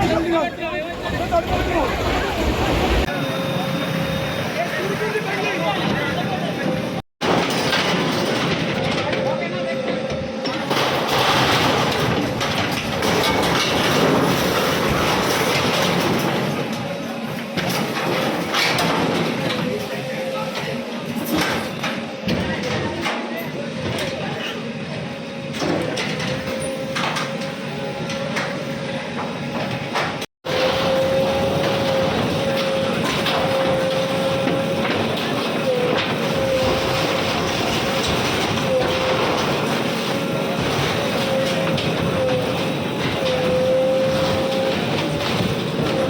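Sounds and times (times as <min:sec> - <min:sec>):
bulldozer engine whining: 0:00.0 - 0:07.0, 0:30.5 - 0:46.0
heavy engine running: 0:00.0 - 0:46.0
bulldozer clattering and rattling: 0:05.6 - 0:46.0.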